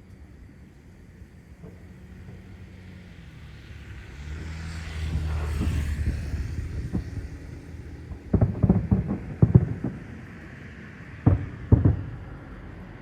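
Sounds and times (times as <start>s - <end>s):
fireworks bursting with booms: 5.1s - 12.9s.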